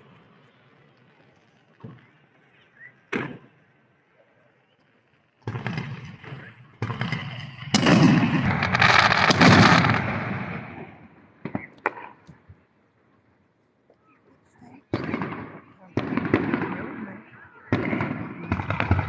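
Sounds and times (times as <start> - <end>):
fireworks bangs and crackling: 0.0 - 12.6, 14.6 - 19.0
firework bang: 3.1 - 3.6, 5.5 - 12.0.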